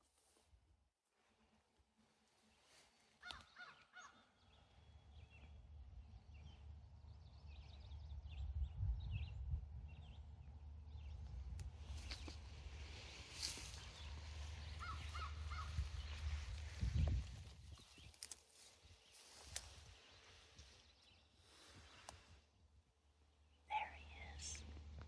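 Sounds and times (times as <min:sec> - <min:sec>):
birds calling: 0:02.7 - 0:08.5, 0:09.9 - 0:22.3
low rumble: 0:04.8 - 0:17.6.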